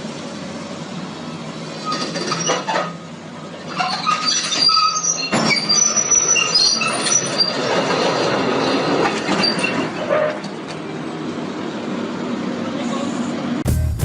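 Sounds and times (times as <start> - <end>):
metal squealing and screeching: 1.8 - 3.0, 3.7 - 10.5.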